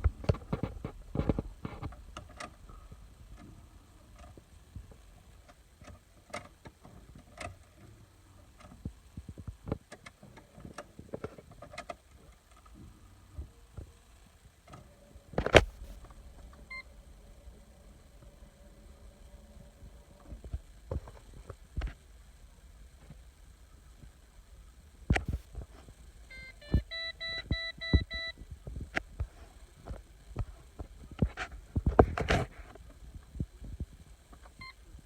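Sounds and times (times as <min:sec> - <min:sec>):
faint steady hum: 0:00.0 - 0:35.0
dashboard beep: 0:26.3 - 0:28.4.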